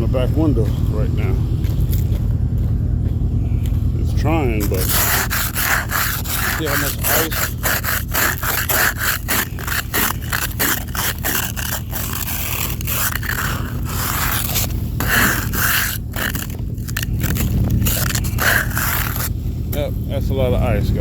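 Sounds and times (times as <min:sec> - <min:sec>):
steady low hum: 0:00.0 - 0:21.0
ice scraper scraping car glass: 0:04.6 - 0:19.3.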